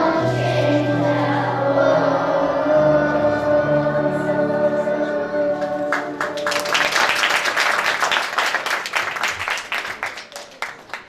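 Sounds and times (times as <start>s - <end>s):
audience applauding: 5.8s - 11.0s.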